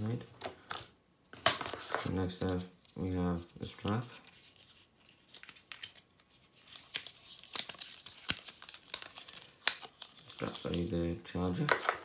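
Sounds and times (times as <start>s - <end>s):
packaging crinkling and rustling: 3.8s - 12.0s.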